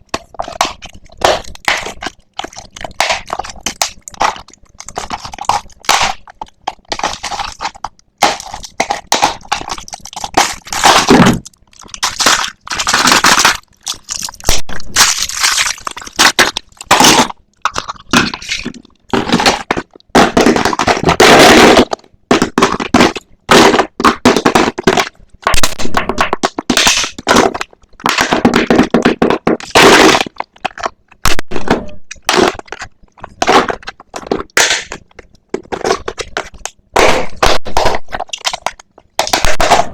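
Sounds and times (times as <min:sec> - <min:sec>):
packaging crinkling and tearing: 0:00.2 - 0:19.6.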